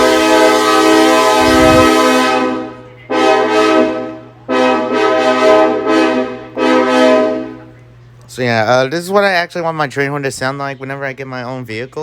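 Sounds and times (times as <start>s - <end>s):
synthesized train horn blasts: 0.0s - 7.7s.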